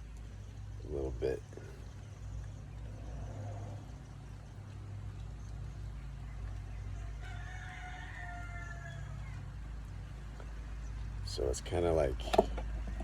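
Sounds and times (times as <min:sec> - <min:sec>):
steady low hum: 0:00.0 - 0:07.5, 0:08.2 - 0:13.0
rooster crowing: 0:06.9 - 0:09.5.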